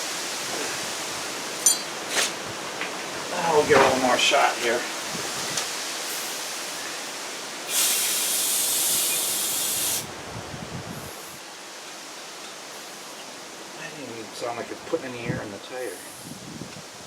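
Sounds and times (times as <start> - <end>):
compressed air hissing: 7.6 - 10.1, 10.9 - 11.5.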